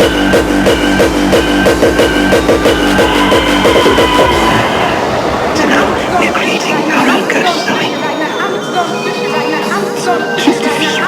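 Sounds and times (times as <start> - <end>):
loud music with driving beat: 0.0 - 8.1.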